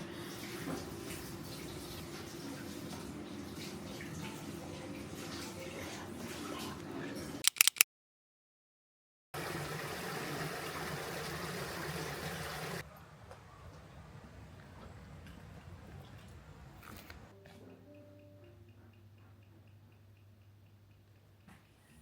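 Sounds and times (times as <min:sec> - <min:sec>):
sharp clicks: 0:07.4 - 0:07.9
running water rushing: 0:09.4 - 0:12.8.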